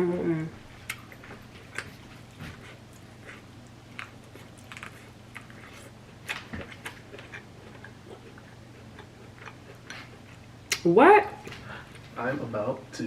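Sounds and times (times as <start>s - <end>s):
low steady hum: 0.0s - 13.0s
chewing: 0.7s - 12.2s
crab shell cracking: 3.6s - 8.0s.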